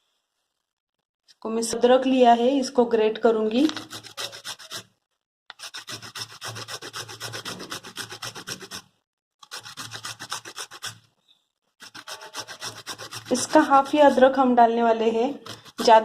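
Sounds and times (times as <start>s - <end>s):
ginger grated on a grater: 3.7s - 4.9s, 5.5s - 11.1s, 11.8s - 14.5s, 15.4s - 16.0s.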